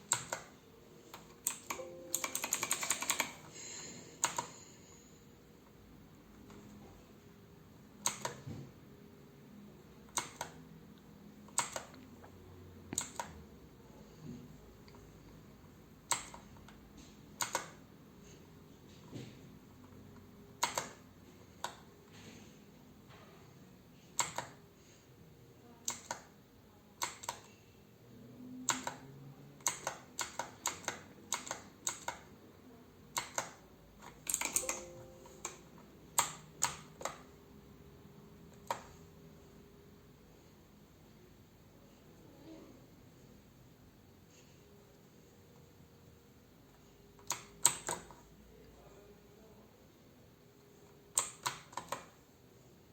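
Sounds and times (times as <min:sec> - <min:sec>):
mechanical keyboard clicks: 0:00.1 - 0:00.5, 0:01.1 - 0:03.5, 0:04.2 - 0:04.5, 0:08.0 - 0:08.4, 0:10.1 - 0:10.6, 0:11.5 - 0:12.0, 0:13.0 - 0:13.4, 0:17.4 - 0:17.8, 0:20.6 - 0:21.0, 0:24.2 - 0:24.6, 0:25.8 - 0:26.3, 0:27.0 - 0:27.5, 0:28.7 - 0:29.0, 0:29.6 - 0:32.3, 0:33.1 - 0:35.6, 0:47.2 - 0:48.1, 0:51.2 - 0:52.2.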